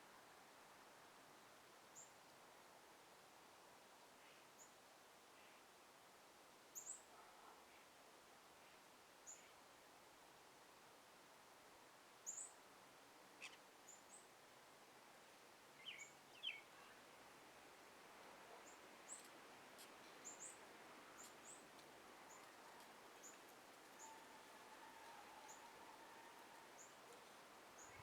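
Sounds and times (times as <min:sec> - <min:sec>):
background hiss: 0:00.0 - 0:28.0
songbirds chirping: 0:15.7 - 0:17.1, 0:18.5 - 0:28.0.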